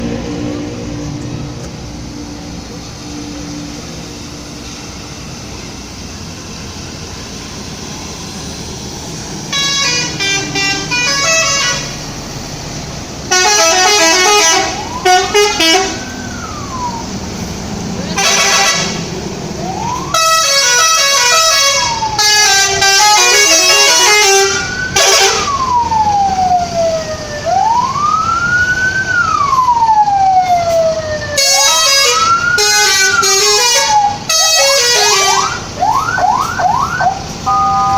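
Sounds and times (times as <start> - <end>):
low engine rumble: 0.0 - 20.2
multi-tone bus horn tunes: 9.5 - 12.2, 13.2 - 16.2, 18.1 - 19.1, 20.1 - 25.6, 31.4 - 35.7, 37.4 - 37.9
wailing siren tones: 13.3 - 18.8, 19.5 - 37.9.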